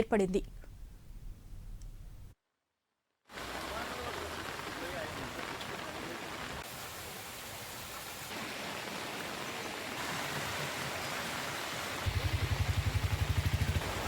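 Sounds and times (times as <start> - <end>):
rain and floodwater rushing: 3.3 - 14.0.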